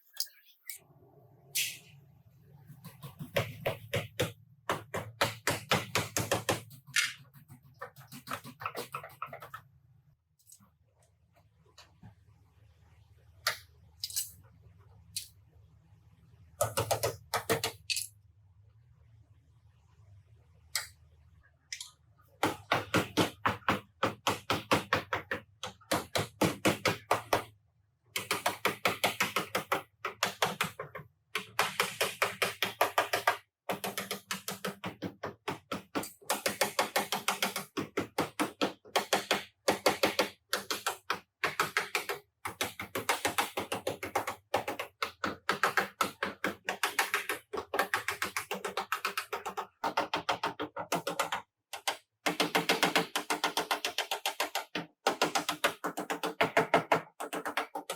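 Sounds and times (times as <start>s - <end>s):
hammer tapping on sheet metal: 2.8s - 7.2s, 28.2s - 57.9s.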